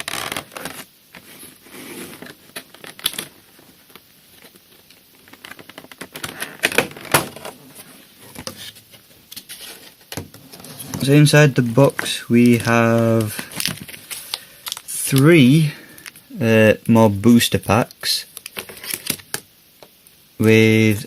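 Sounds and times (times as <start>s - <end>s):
cardboard rustling and crinkling: 0.0s - 14.8s.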